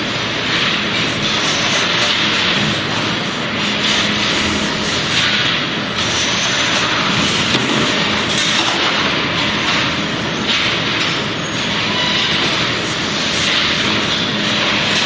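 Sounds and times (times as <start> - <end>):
machinery clattering and hissing: 0.6 - 15.0.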